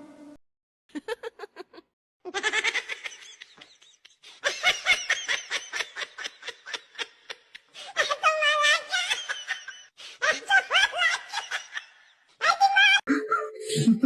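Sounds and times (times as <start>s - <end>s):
person laughing: 0.9s - 7.7s, 13.7s - 14.0s.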